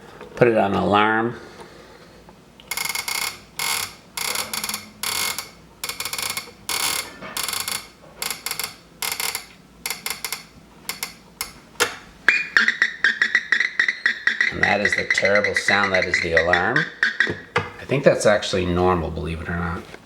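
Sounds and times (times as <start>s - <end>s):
alarm clock buzzer pulses: 2.7s - 11.1s, 12.3s - 17.5s.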